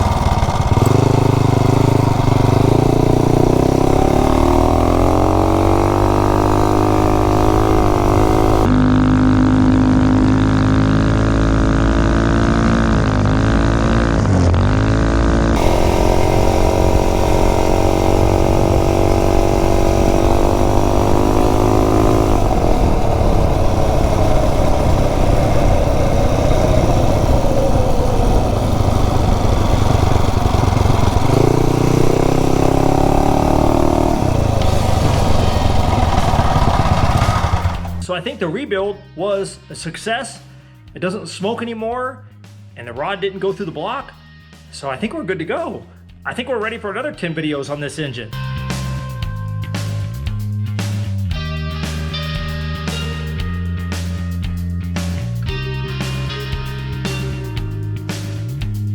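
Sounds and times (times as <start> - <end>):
minibike engine running: 0.0 - 38.1.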